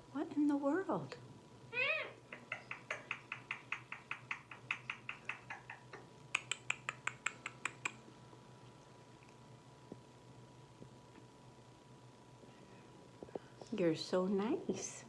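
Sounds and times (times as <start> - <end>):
parrot clicking: 2.3 - 8.0.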